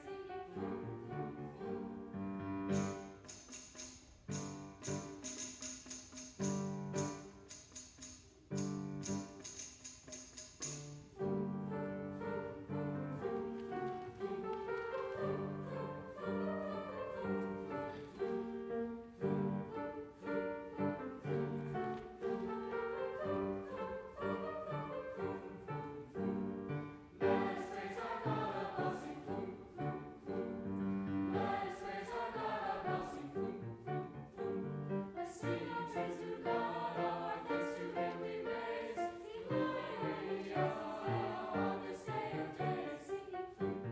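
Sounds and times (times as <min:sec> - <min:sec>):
choir singing: 0:00.0 - 0:03.4, 0:11.2 - 0:43.9
tambourine shaking: 0:02.7 - 0:11.4.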